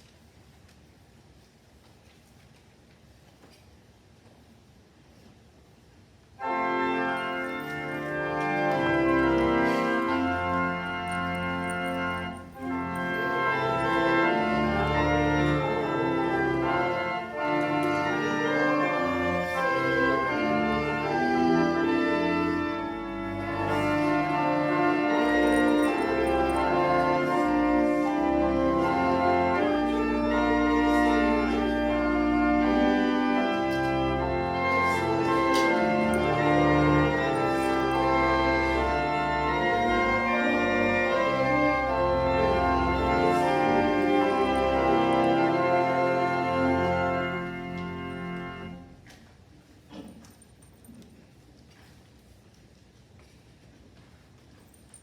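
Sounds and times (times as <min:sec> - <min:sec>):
church organ playing chords: 0:06.4 - 0:49.1.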